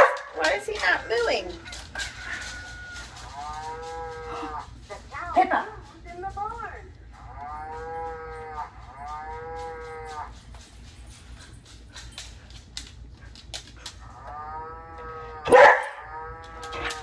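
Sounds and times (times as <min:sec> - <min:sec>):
toy speaker cow mooing: 0:07.1 - 0:10.3, 0:14.1 - 0:17.0.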